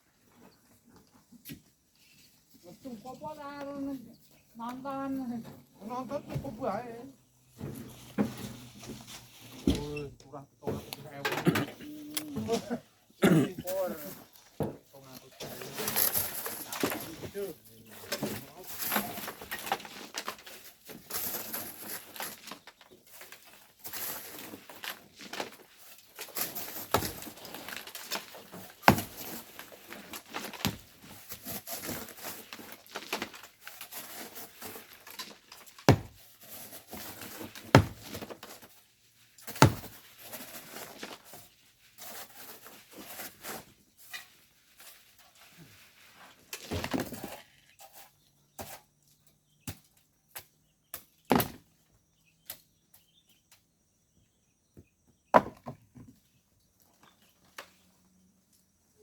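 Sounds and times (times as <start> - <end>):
tools scraping in sand and stones: 13.6 - 49.0.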